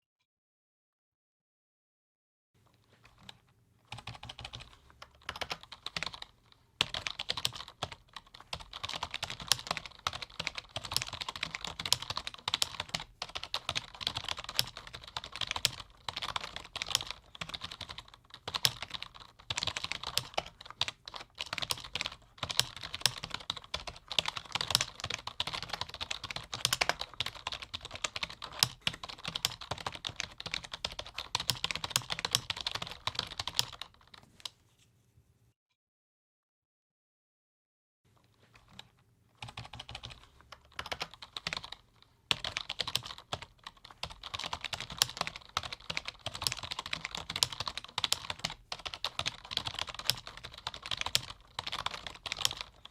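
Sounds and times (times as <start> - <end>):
typing on computer keyboard: 3.1 - 34.2, 38.6 - 52.9.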